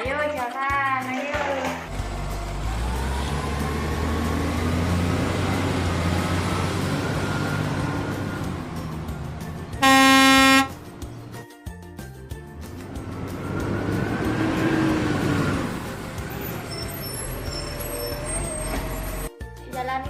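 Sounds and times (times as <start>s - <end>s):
electronic horn beep: 9.8s - 10.8s.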